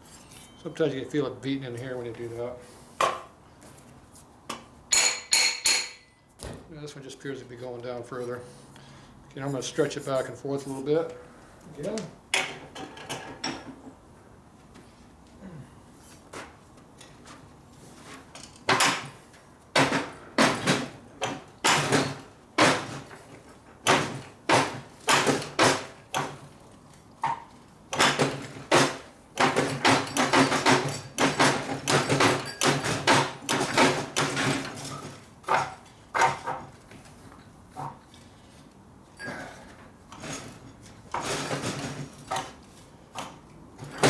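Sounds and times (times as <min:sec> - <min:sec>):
hammer striking metal tool: 0:04.9 - 0:06.1.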